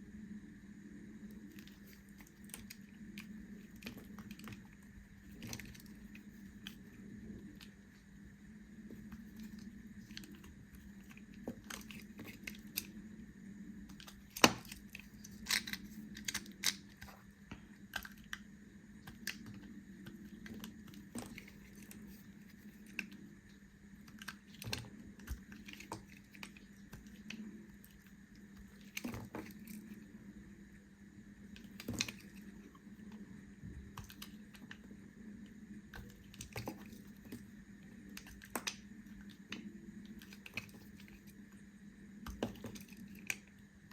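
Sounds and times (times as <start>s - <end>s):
faint steady hum: 0.0s - 43.9s
knife cutting soap: 13.8s - 18.4s.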